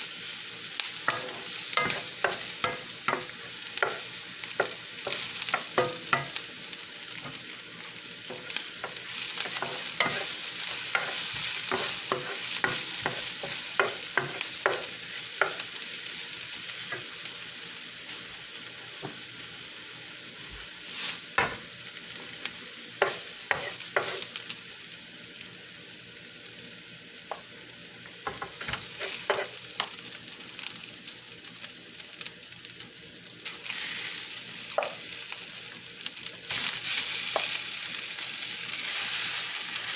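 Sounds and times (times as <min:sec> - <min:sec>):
rice sizzling in a pan: 0:00.0 - 0:39.9
spatula scraping a pan: 0:08.3 - 0:14.8, 0:28.3 - 0:29.5.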